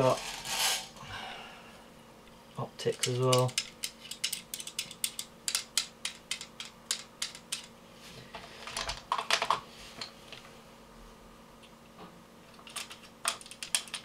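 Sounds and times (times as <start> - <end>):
clicks and rattles: 2.9 - 7.7, 12.5 - 14.0.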